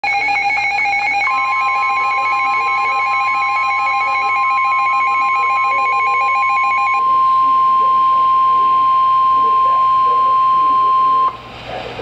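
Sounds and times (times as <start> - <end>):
alternating electronic alert signal: 0.0 - 11.4
steady alarm tone: 0.0 - 11.5.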